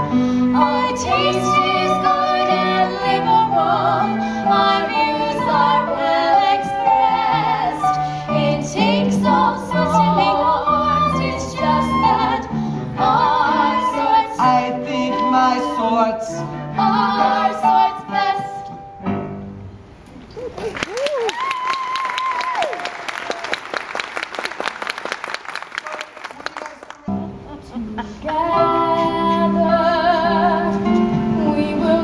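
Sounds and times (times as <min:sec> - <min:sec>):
women singing with vibrato: 0:00.0 - 0:18.8, 0:27.5 - 0:32.0
sustained musical accompaniment: 0:00.0 - 0:20.0, 0:27.1 - 0:32.0.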